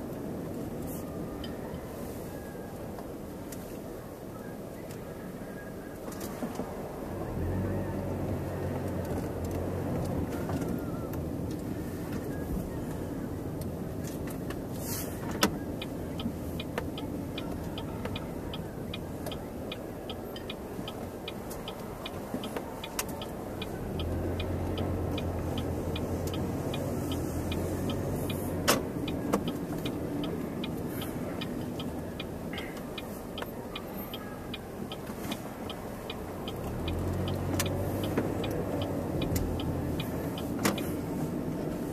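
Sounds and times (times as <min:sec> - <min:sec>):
car engine hum: 0:00.0 - 0:41.9
road noise: 0:00.0 - 0:41.9
light regular ticking: 0:15.3 - 0:41.9.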